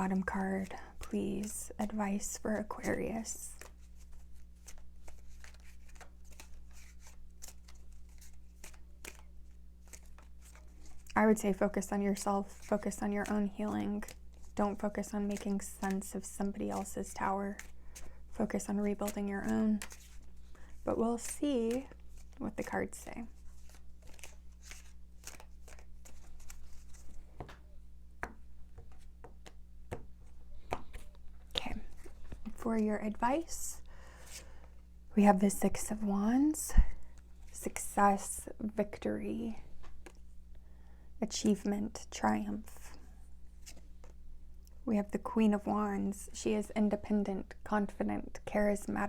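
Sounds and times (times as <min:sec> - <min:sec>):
low electrical hum: 0:00.0 - 0:49.0
cards being shuffled: 0:00.3 - 0:32.6.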